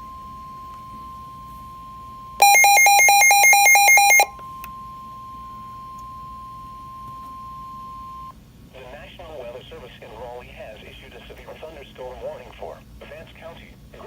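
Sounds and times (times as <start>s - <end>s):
steady warning alarm tone: 0.0s - 8.3s
rapidly pulsing electronic alarm: 2.4s - 4.4s.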